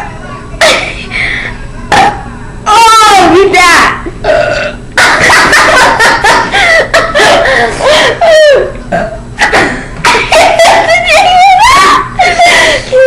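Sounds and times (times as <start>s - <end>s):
people laughing loudly: 5.0s - 8.6s, 10.1s - 13.0s.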